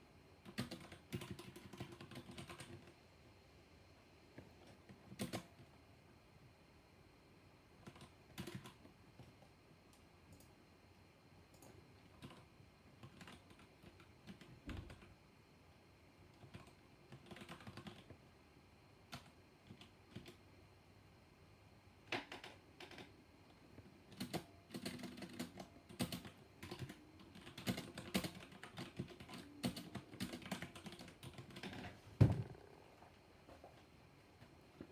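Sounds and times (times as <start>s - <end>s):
mechanical keyboard typing: 0.4s - 2.9s, 4.6s - 5.6s, 7.8s - 8.8s, 11.6s - 15.1s, 16.3s - 18.1s, 19.1s - 20.4s, 22.1s - 23.1s, 24.1s - 32.8s.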